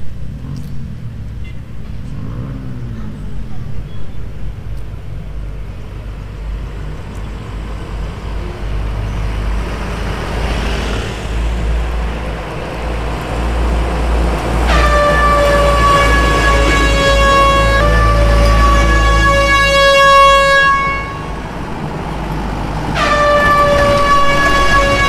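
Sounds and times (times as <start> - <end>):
road noise: 0.0 - 25.0
truck engine rumble: 0.0 - 25.0
air horn tone: 14.6 - 21.5, 22.9 - 25.0.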